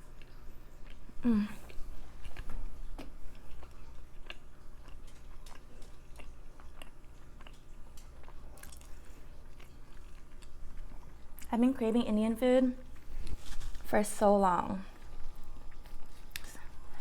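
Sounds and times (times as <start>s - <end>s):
person chewing food: 0.0s - 11.5s, 14.9s - 17.0s
faint low hum: 0.0s - 17.0s.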